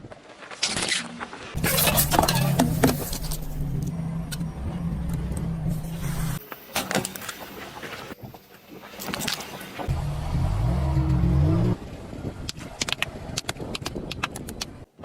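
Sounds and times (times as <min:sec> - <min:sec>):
car engine humming: 0:01.6 - 0:06.4, 0:09.9 - 0:12.5.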